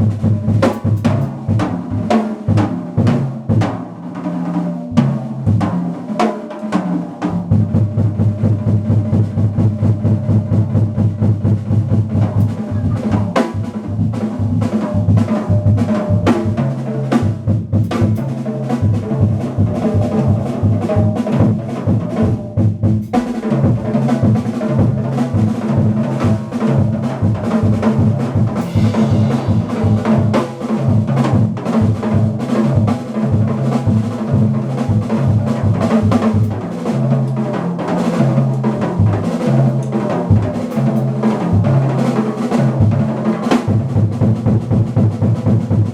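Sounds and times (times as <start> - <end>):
drum kit: 0.0 - 45.9
bass line: 7.5 - 14.6
jazz band playing: 10.6 - 16.6, 18.0 - 45.9.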